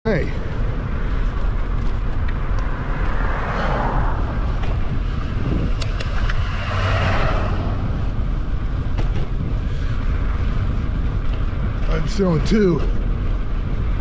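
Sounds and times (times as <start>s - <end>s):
tyre noise on road: 0.1s - 14.0s
wind buffeting microphone: 0.1s - 14.0s.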